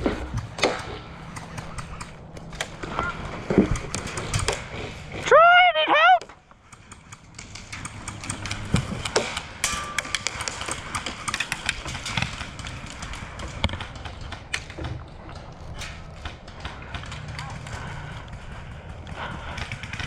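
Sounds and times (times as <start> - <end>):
gear knocking: 6.2 - 20.0.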